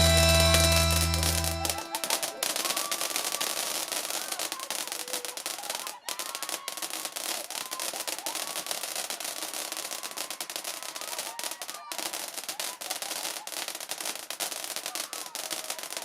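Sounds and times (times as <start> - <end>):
rock music: 0.0 - 2.4
faint voices: 0.0 - 16.0
fireworks crackling and popping: 0.0 - 16.0.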